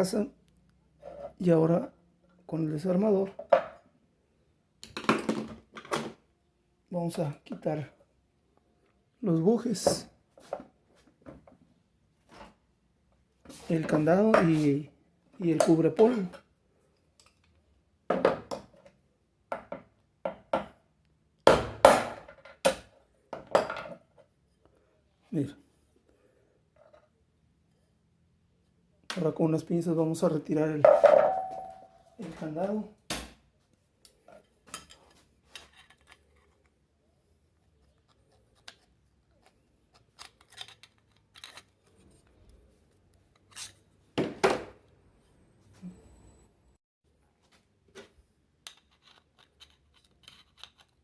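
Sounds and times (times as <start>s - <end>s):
small metal clicks and scrapes: 34.0s - 36.8s, 37.6s - 43.9s, 48.6s - 51.0s.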